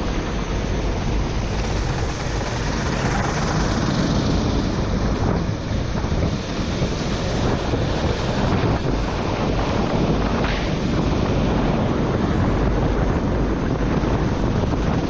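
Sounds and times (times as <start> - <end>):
kart engine: 0.0 - 9.5
wind buffeting on microphone: 0.0 - 15.0.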